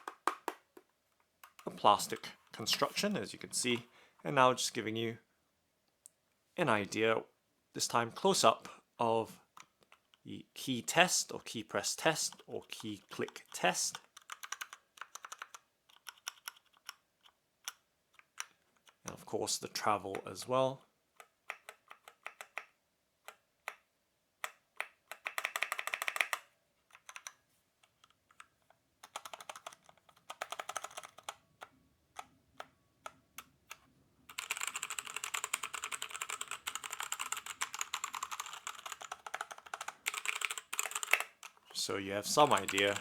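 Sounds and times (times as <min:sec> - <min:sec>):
mechanical keyboard typing: 0:12.3 - 0:17.0, 0:21.2 - 0:22.7, 0:24.4 - 0:27.4, 0:28.3 - 0:32.7, 0:34.3 - 0:41.6, 0:42.3 - 0:43.0.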